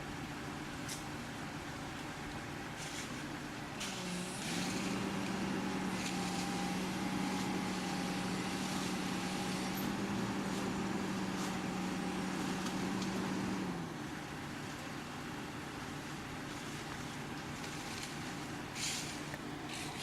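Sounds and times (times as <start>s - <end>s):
motor humming: 3.8s - 13.8s.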